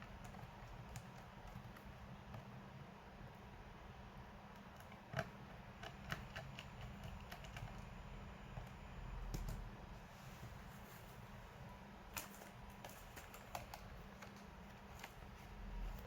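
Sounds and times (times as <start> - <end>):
low steady hum: 0.0 - 16.0
laptop clicks and taps: 4.5 - 7.9, 8.6 - 9.7.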